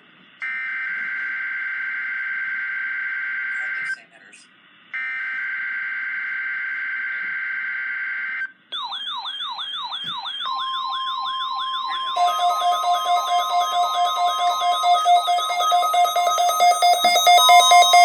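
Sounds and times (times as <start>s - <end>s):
pulsing beep alarm: 8.8s - 18.0s
rising and falling siren wail: 8.8s - 18.0s
steady tone: 10.5s - 18.0s.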